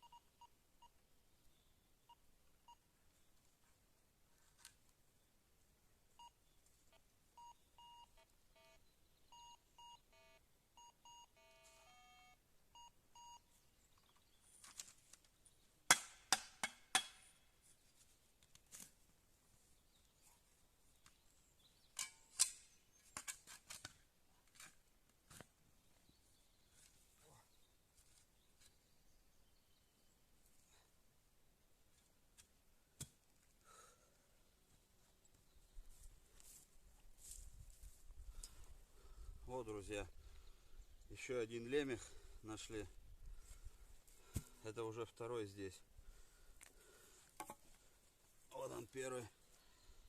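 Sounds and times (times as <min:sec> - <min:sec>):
metal detector beeping: 0:06.2 - 0:13.4.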